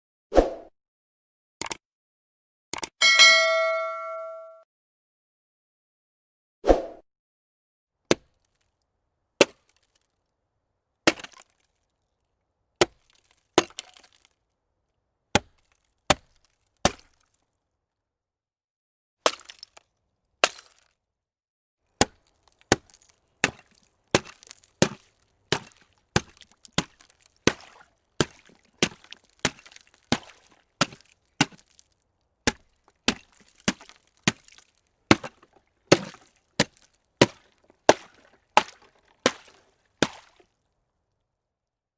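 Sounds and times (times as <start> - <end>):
ice cracking: 12.8 - 14.4, 22.1 - 40.6.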